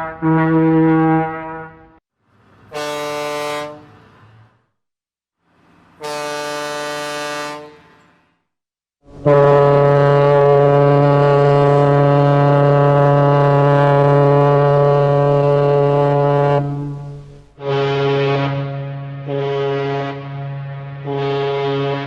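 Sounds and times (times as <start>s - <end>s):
ship's horn blasts: 0.0s - 2.0s, 2.7s - 4.0s, 6.0s - 8.0s, 9.0s - 22.0s.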